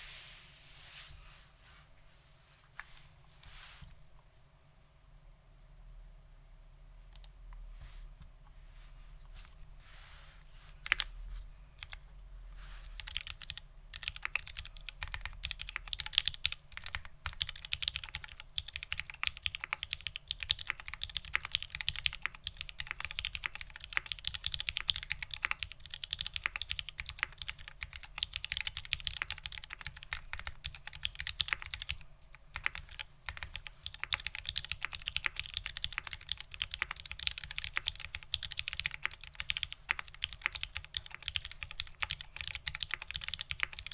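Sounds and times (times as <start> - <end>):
mechanical keyboard typing: 13.0 - 43.9.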